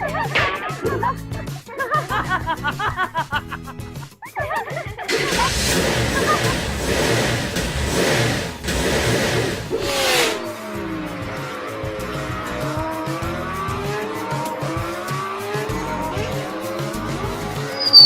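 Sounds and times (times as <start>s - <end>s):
background music: 0.0s - 18.0s
cartoon tyres squealing: 5.1s - 15.4s, 17.5s - 18.0s.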